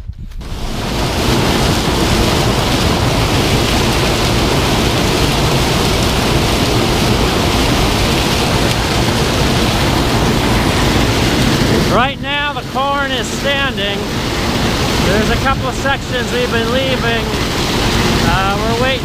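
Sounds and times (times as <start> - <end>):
wind blowing across microphone: 0.0 - 19.0.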